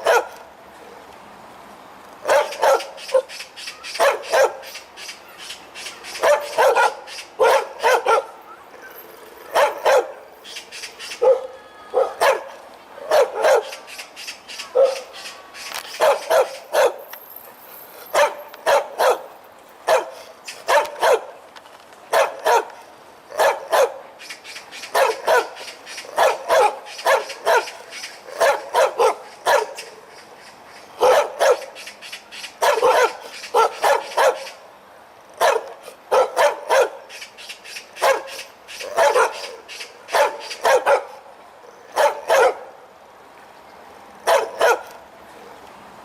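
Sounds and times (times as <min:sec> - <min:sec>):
dog barking loudly: 0:00.0 - 0:00.4, 0:02.2 - 0:04.8, 0:06.0 - 0:08.4, 0:09.4 - 0:10.2, 0:11.1 - 0:13.9, 0:14.7 - 0:15.2, 0:15.9 - 0:17.1, 0:18.1 - 0:21.3, 0:22.1 - 0:24.0, 0:24.9 - 0:29.9, 0:31.0 - 0:31.8, 0:32.6 - 0:34.6, 0:35.4 - 0:37.1, 0:38.0 - 0:41.2, 0:41.9 - 0:42.8, 0:44.2 - 0:45.0.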